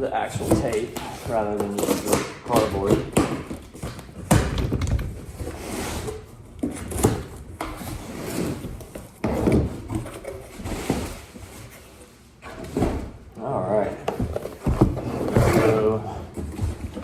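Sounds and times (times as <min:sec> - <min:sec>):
cardboard scraping: 0:00.2 - 0:04.5, 0:05.1 - 0:13.2, 0:13.8 - 0:17.0.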